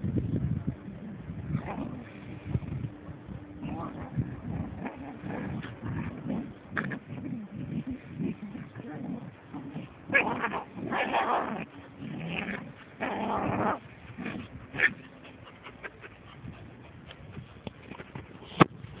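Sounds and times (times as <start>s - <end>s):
puppies growling and whimpering: 3.6s - 18.2s.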